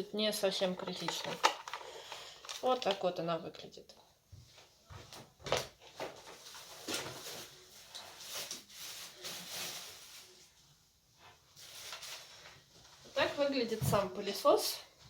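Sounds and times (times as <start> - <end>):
packaging rustling: 0.6 - 3.0, 5.4 - 10.6, 11.6 - 12.6
plastic parts knocking and clicking: 0.8 - 1.8.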